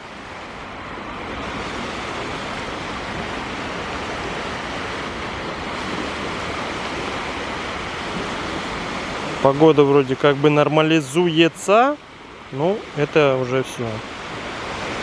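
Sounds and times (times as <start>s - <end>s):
sea surf rushing: 0.0s - 15.0s
wind: 0.0s - 15.0s.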